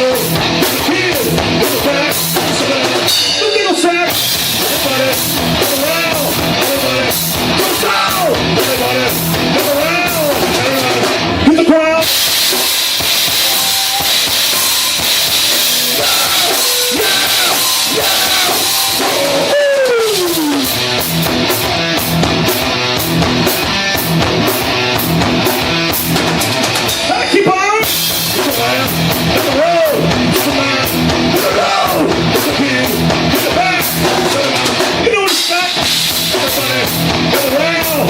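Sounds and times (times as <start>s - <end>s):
drum kit: 0.0s - 38.0s
live rock band playing: 0.0s - 38.0s.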